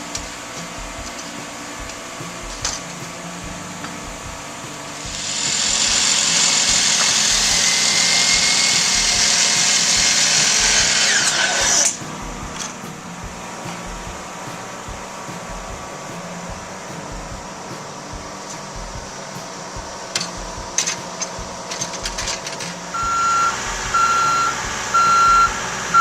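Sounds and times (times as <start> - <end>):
handheld power tool running: 0.1 - 14.2.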